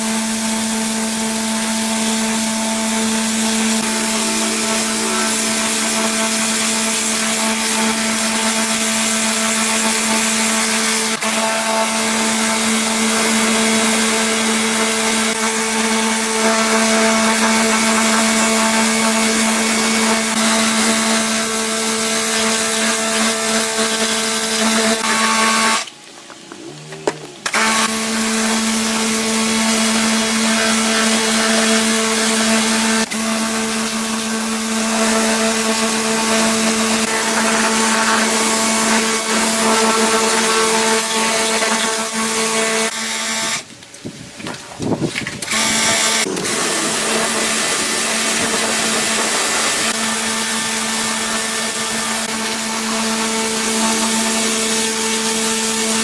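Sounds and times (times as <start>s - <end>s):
small electric motor running: 0.0s - 25.9s, 45.4s - 56.0s.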